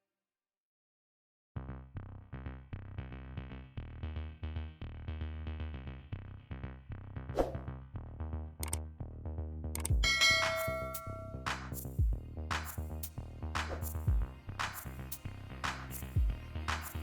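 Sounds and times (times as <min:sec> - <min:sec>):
short swish: 0:07.3 - 0:07.7
electronic music with heavy bass: 0:07.6 - 0:17.0.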